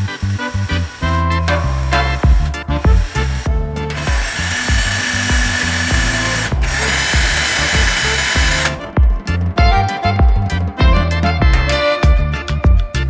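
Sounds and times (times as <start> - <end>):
background music with steady beat: 0.0 - 13.0
electric drill whining: 2.0 - 9.0.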